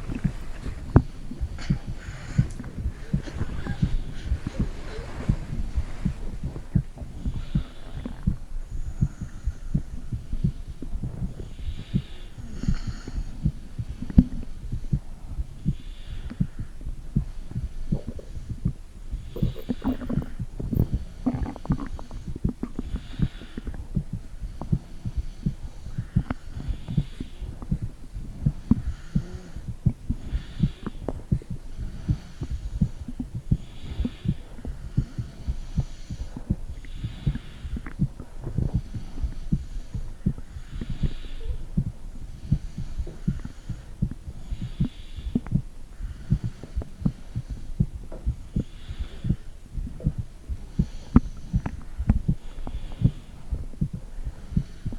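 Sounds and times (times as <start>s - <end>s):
heartbeat thumps: 0.0s - 54.9s
soft hiss: 0.0s - 54.9s.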